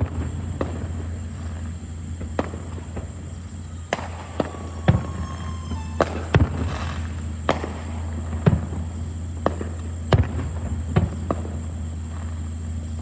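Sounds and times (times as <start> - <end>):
fireworks bangs: 0.0 - 13.0
steady low hum: 0.0 - 13.0
faint falling whistle: 3.7 - 7.2.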